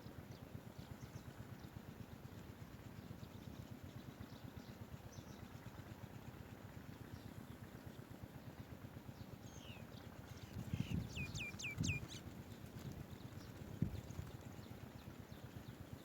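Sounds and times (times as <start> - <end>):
bird chirping calls: 9.5 - 12.3.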